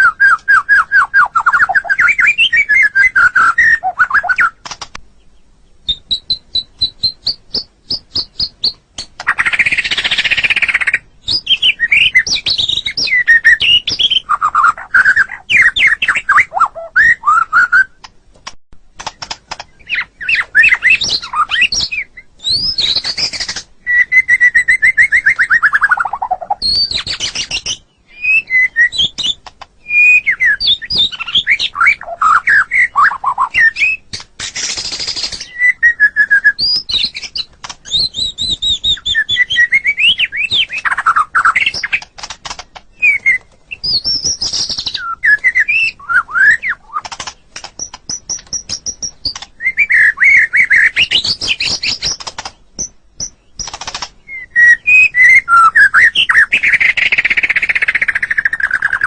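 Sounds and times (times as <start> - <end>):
songbird whistling and trilling: 0.0 - 4.8, 5.8 - 18.0, 19.0 - 42.1, 42.9 - 59.0.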